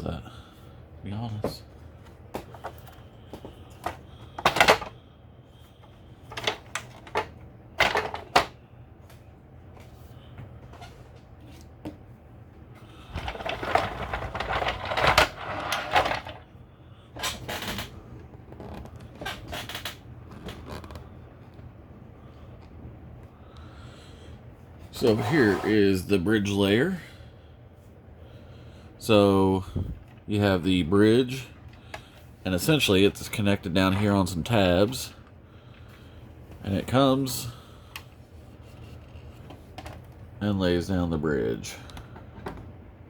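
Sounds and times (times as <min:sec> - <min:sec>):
plastic toy parts clattering: 0:13.1 - 0:16.4.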